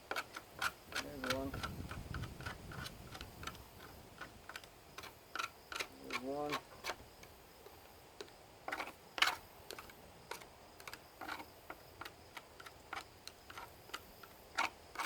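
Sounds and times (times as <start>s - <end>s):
screwdriver clicking on screws: 0.0s - 7.0s.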